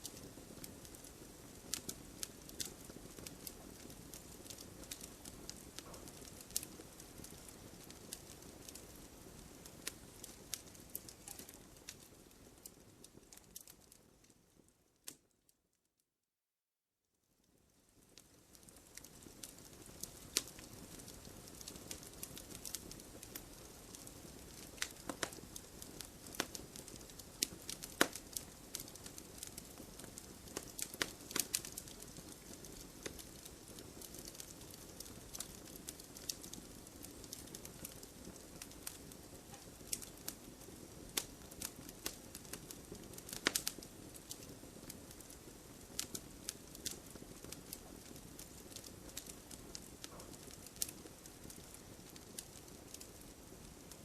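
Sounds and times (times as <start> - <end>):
campfire flames rushing: 0.0 - 13.8, 18.0 - 54.0
fire crackling and popping: 0.0 - 15.4, 17.4 - 54.0.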